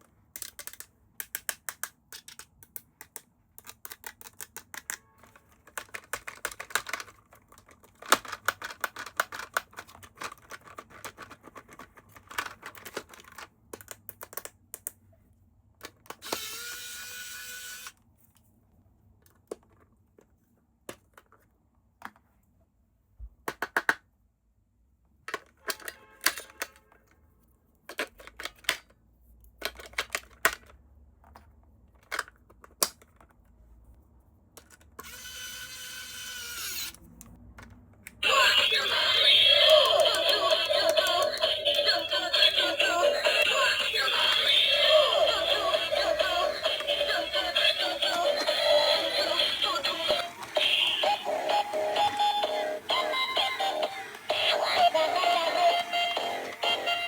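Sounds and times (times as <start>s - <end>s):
plastic toy parts clicking: 0.2s - 15.0s, 15.8s - 16.9s, 25.2s - 26.8s, 27.9s - 29.0s, 29.6s - 33.4s, 34.6s - 35.3s, 37.2s - 57.0s
small electric motor whirring: 16.2s - 18.0s, 35.0s - 37.0s.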